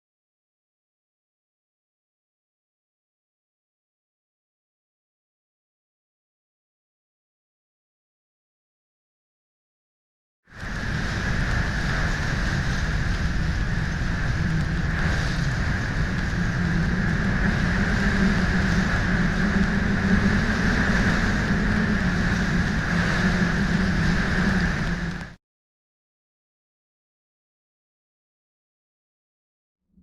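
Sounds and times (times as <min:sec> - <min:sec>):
loud rumbling hiss: 0:10.5 - 0:25.4.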